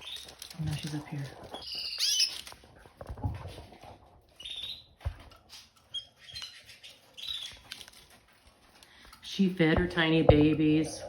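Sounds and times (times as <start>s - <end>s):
canaries chirping: 0.0s - 2.8s, 4.2s - 8.4s
birds knocking and scuffling: 0.0s - 11.0s.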